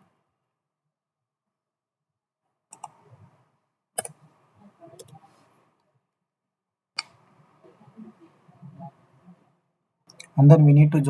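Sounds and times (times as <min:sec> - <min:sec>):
faint low room noise: 0:02.4 - 0:11.0
computer mouse clicks: 0:02.7 - 0:03.1, 0:04.0 - 0:04.3, 0:04.9 - 0:05.3.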